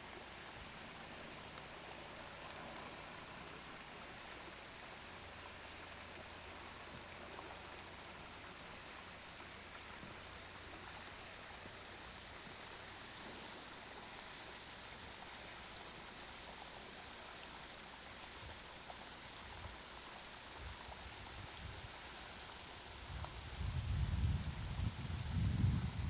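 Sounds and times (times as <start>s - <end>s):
faint steady rushing hiss: 0.0s - 26.0s
wind bumps on microphone: 23.1s - 26.0s.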